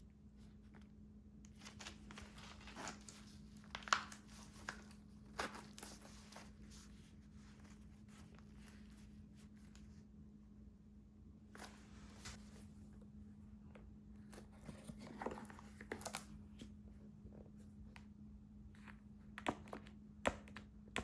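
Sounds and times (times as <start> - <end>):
steady low hum: 0.0 - 21.0
handling clicks and rustles: 1.5 - 9.9.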